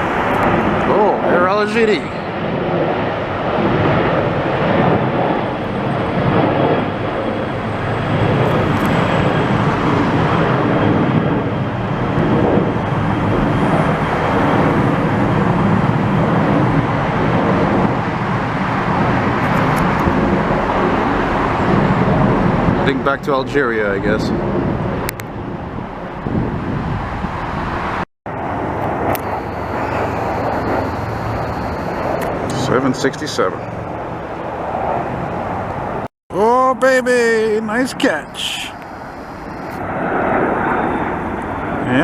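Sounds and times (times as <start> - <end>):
jet engines running: 0.0 - 42.0
faint high whine: 28.9 - 33.6, 36.4 - 39.8.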